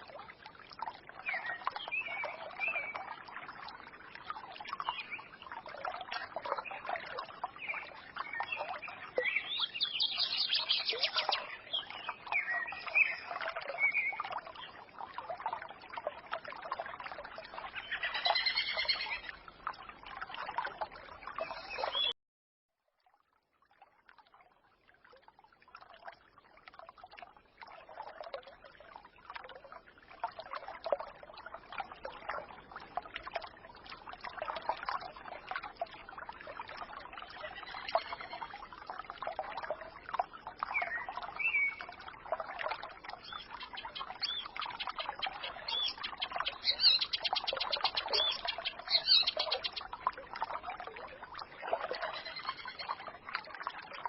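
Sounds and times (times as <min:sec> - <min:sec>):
stream babbling over stones: 0:00.0 - 0:22.1, 0:24.0 - 0:54.0
songbirds singing: 0:01.1 - 0:03.1, 0:06.2 - 0:14.8, 0:17.5 - 0:19.4, 0:20.8 - 0:22.2, 0:37.3 - 0:38.5, 0:40.7 - 0:42.0, 0:43.1 - 0:50.0, 0:51.9 - 0:53.2.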